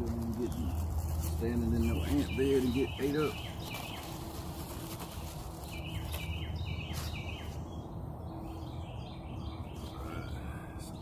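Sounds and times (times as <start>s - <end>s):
bird chirping: 0.2s - 11.0s.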